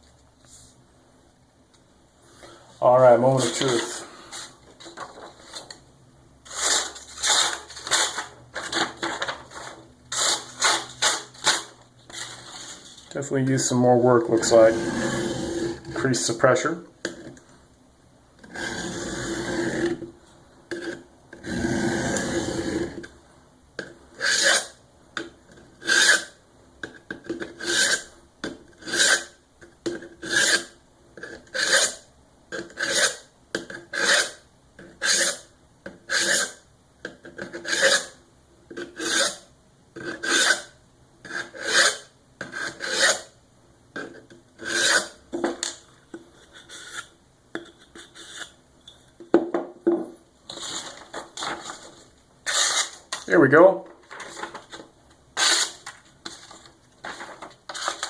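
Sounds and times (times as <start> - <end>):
knife scraping on sharpening plate: 41.3 - 43.3, 44.0 - 45.2, 46.4 - 48.6.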